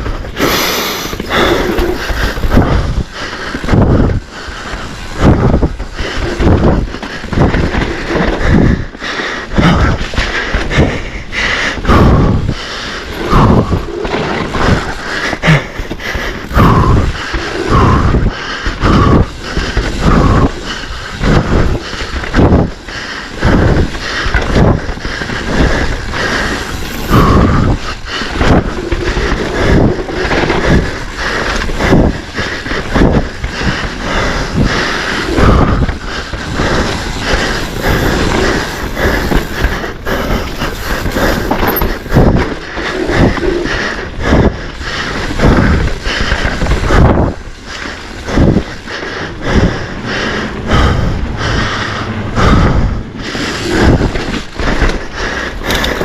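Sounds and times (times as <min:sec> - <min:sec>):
bike tyres on dirt: 0:00.0 - 0:56.0
bike chain and frame clattering: 0:18.6 - 0:44.1, 0:53.3 - 0:56.0.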